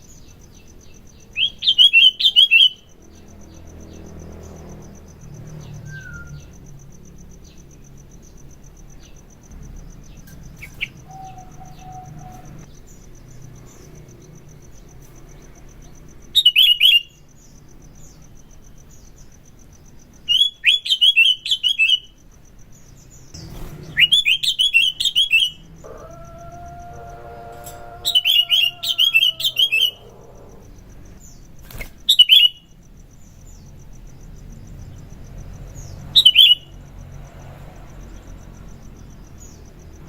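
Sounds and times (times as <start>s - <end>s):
faint bird chirps: 0.0s - 4.1s, 5.2s - 33.7s
bird chattering song: 0.1s - 4.0s, 9.9s - 13.0s, 22.8s - 32.7s.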